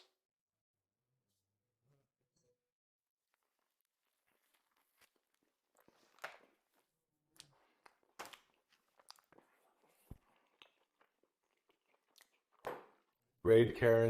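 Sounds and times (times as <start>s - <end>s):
chewing crunches and clicks: 7.4s - 13.0s.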